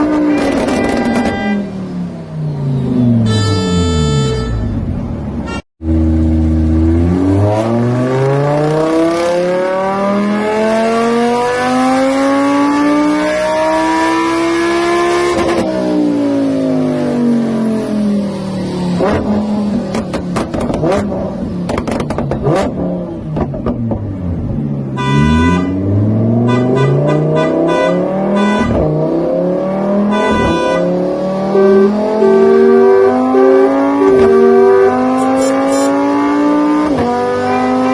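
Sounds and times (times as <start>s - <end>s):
car engine revving: 0.0s - 4.2s, 4.9s - 37.9s
steady high tone: 3.2s - 4.8s.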